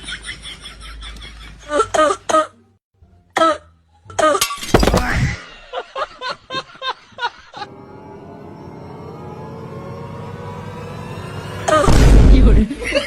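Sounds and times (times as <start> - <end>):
music drone: 7.6 - 12.2
loud thump: 11.8 - 12.6.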